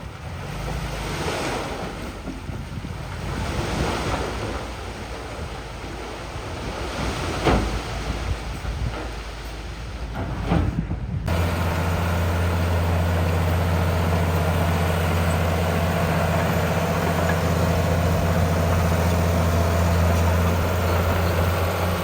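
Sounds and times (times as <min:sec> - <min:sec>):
low engine rumble: 0:07.8 - 0:22.0.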